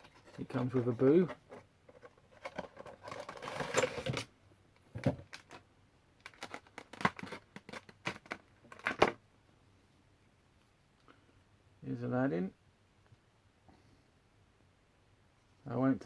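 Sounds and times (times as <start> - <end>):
packaging rustling: 2.0 - 4.2, 6.2 - 9.0.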